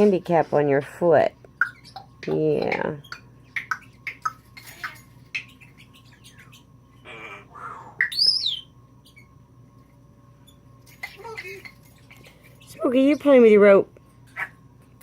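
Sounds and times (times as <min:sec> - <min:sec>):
parrot squawk: 0:03.0 - 0:09.3, 0:14.4 - 0:14.6
parrot whistle sweeping up and down: 0:08.0 - 0:08.7.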